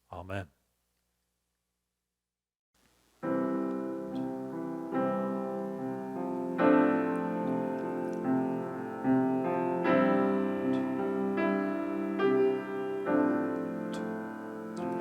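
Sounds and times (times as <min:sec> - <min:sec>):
piano playing slow chords: 0:03.2 - 0:15.0.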